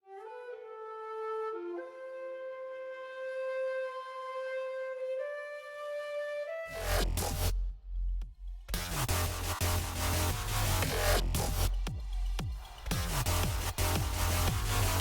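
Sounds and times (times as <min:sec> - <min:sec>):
flute-like melody: 0:00.0 - 0:07.6.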